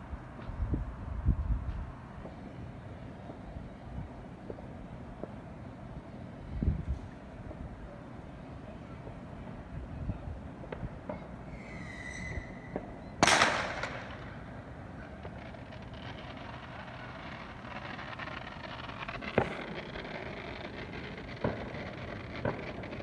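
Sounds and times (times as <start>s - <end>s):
small firework pops: 3.2s - 5.4s, 10.1s - 23.0s
whistling firework: 8.3s - 23.0s
firework bang: 10.8s - 23.0s.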